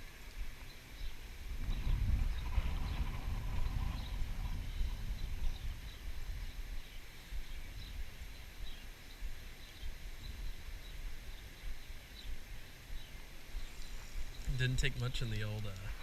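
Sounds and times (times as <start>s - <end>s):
wind rumbling on microphone: 0.0s - 16.0s
faint bird chirps: 3.6s - 15.8s.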